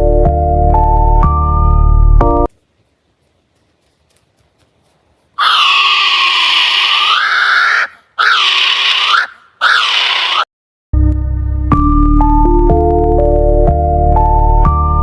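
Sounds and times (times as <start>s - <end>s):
bird screeching: 5.4s - 10.5s.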